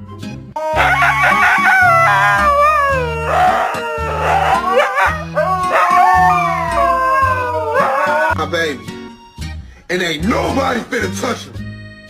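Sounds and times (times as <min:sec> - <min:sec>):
dog howling: 0:00.6 - 0:08.4
dog yelping: 0:00.6 - 0:08.4.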